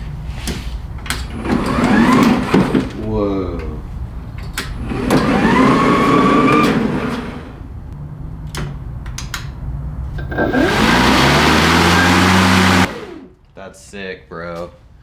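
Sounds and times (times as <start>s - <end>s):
electric lawnmower motor whine: 1.3s - 3.1s, 4.6s - 7.9s, 10.2s - 13.4s
clicks: 4.4s - 9.6s.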